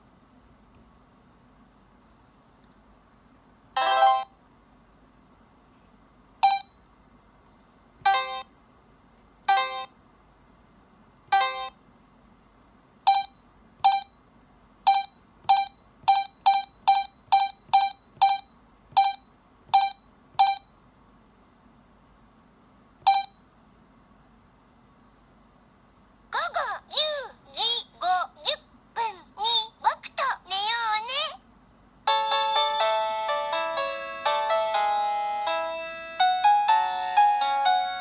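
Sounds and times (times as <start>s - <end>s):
alarm clock electronic beeps: 6.4s - 6.7s, 8.1s - 8.5s, 9.5s - 9.9s, 11.3s - 11.8s, 13.1s - 14.1s, 14.9s - 20.7s, 23.1s - 23.4s.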